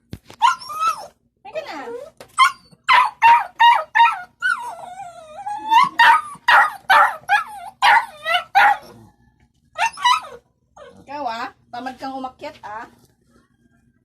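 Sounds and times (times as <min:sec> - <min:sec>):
dog whining and yelping: 0:00.4 - 0:11.2.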